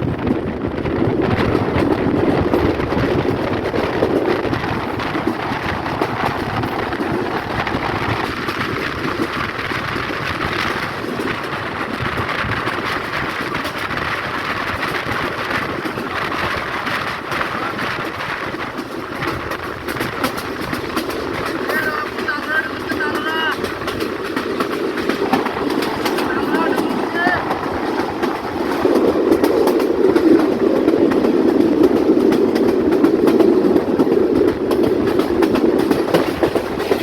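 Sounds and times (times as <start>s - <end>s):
train wheels rumbling on rails: 0.0s - 37.0s.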